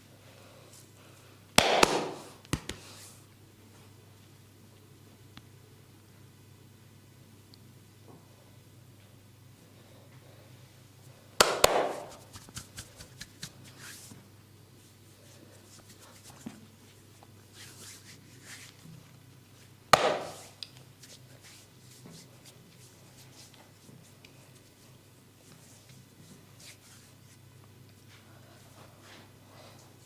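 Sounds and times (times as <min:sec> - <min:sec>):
hand slapping body: 0:01.6 - 0:02.8, 0:11.4 - 0:13.7, 0:19.9 - 0:20.6
light patting and rubbing: 0:11.9 - 0:14.3.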